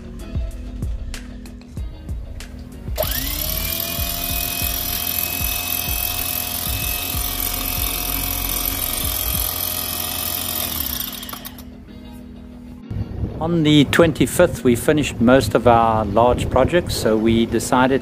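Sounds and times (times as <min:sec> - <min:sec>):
electric winch motor whining: 0:03.0 - 0:11.8.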